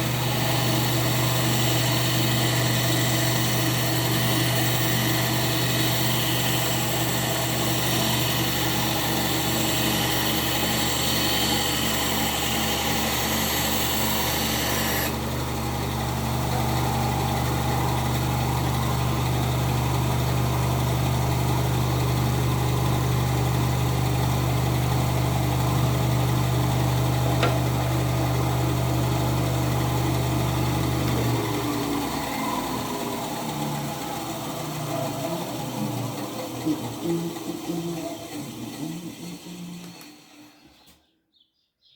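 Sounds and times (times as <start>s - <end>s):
power tool motor humming: 0.0s - 41.0s.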